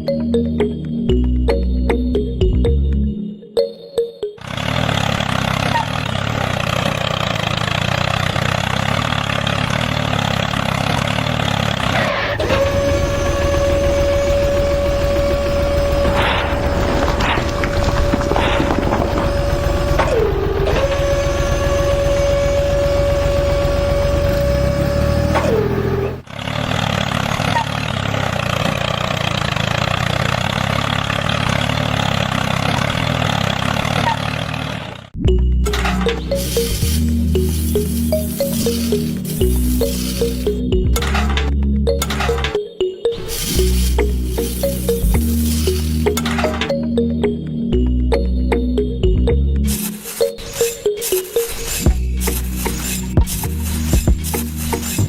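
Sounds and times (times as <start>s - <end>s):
small engine running: 4.4s - 42.5s, 43.2s - 46.7s, 49.6s - 55.0s
small motor whining: 4.7s - 30.8s, 36.0s - 40.6s, 43.2s - 46.6s, 49.7s - 55.0s.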